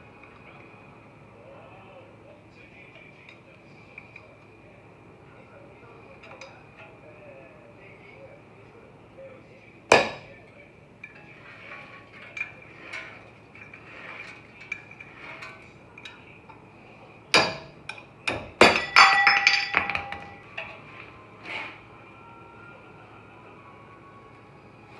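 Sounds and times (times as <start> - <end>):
metal hand tools clinking: 17.4 - 21.0.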